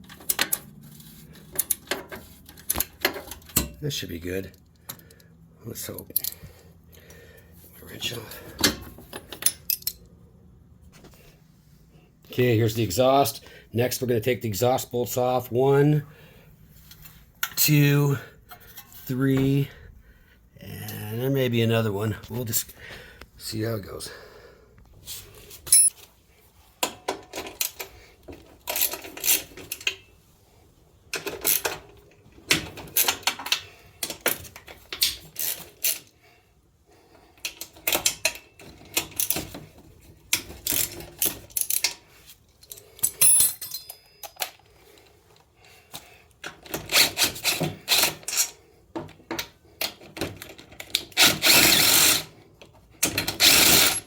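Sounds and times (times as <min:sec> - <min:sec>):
wrench clicking on metal bolts: 0:28.7 - 0:29.9, 0:40.3 - 0:42.0, 0:46.4 - 0:48.6, 0:49.4 - 0:52.3, 0:53.0 - 0:54.0.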